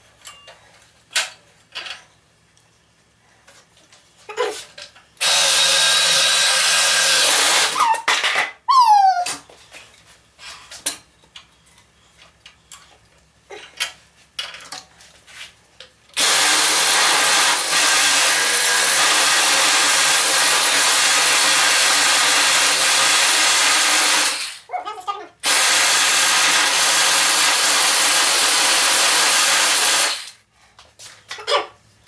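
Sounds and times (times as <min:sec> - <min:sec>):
power tool running on wood: 0:05.2 - 0:07.8, 0:16.2 - 0:24.6, 0:25.4 - 0:30.4.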